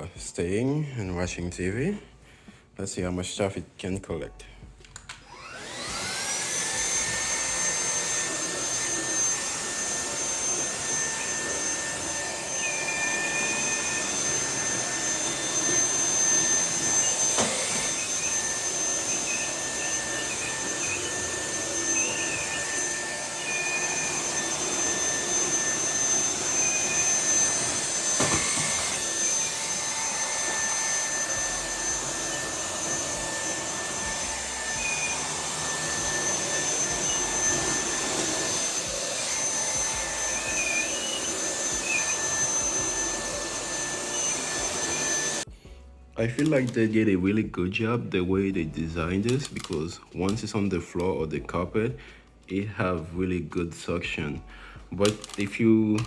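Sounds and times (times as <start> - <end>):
stick vacuum running: 5.0 - 45.5.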